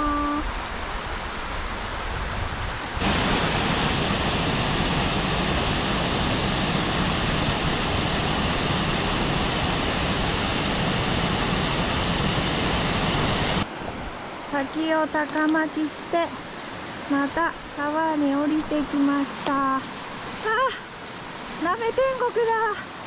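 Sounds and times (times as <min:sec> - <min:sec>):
river water rushing: 0:02.8 - 0:15.2, 0:15.8 - 0:17.9.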